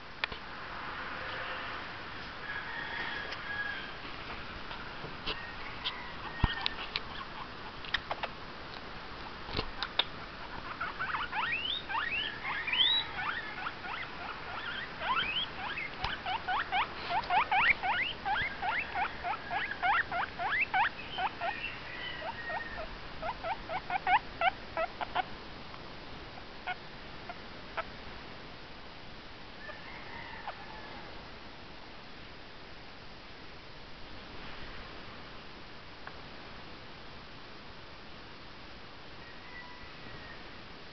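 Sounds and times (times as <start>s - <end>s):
guinea pig squeaking: 5.8s - 8.3s, 9.7s - 25.3s.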